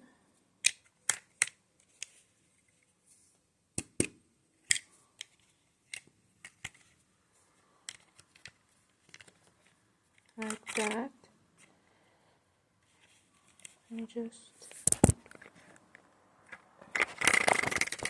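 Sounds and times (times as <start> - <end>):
plastic pieces clicking and snapping: 0.6 - 2.2, 3.8 - 6.9, 7.9 - 11.0, 14.8 - 18.0.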